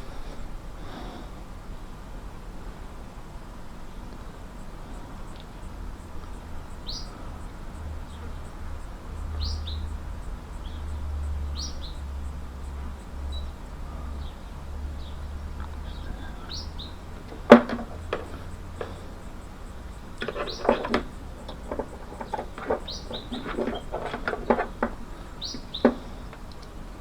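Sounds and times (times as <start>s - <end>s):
small birds chirping: 13.3s - 27.0s
irregular clicks and taps: 17.2s - 19.1s, 20.2s - 26.8s.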